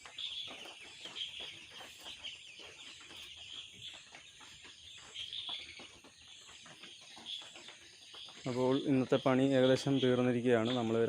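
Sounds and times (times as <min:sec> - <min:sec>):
chicks peeping: 0:00.0 - 0:11.0.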